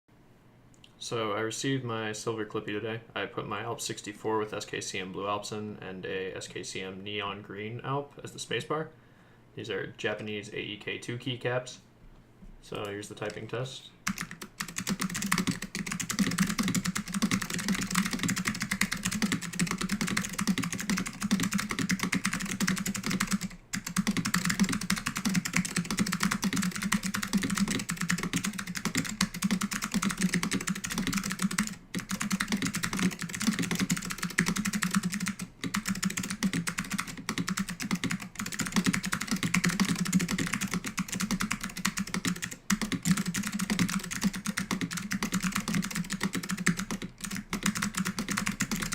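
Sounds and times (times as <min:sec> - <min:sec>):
fast mechanical keyboard typing: 0:14.0 - 0:48.9.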